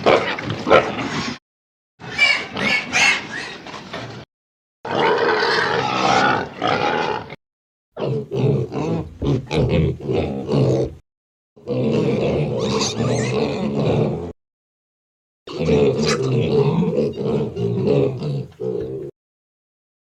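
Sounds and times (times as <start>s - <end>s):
pigs grunting: 4.9s - 7.4s, 8.0s - 11.0s, 11.6s - 14.4s, 15.5s - 19.2s.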